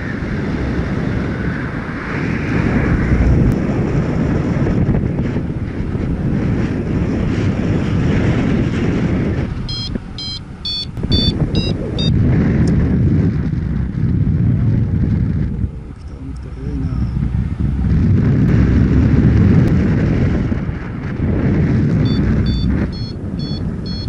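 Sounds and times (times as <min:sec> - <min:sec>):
wind buffeting microphone: 0:00.0 - 0:24.0
short electronic beeps: 0:09.7 - 0:12.1, 0:22.0 - 0:24.0.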